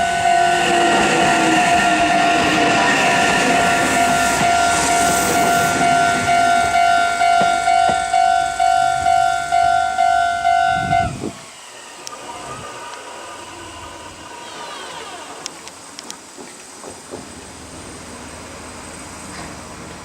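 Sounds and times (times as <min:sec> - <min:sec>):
electronic crossing warning bell: 0:00.0 - 0:11.3
train running past: 0:00.0 - 0:20.0.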